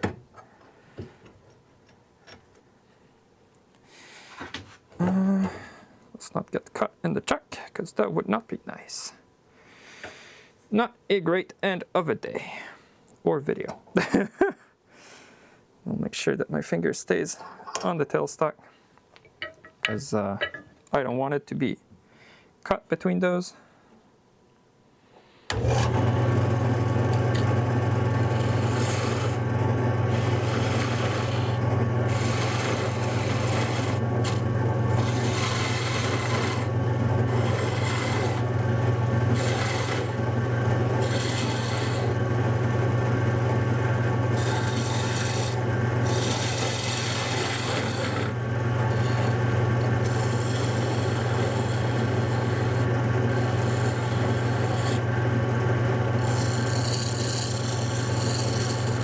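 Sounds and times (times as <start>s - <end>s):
turning tool scraping wood: 25.5s - 59.0s
wood lathe motor hum: 25.5s - 59.0s.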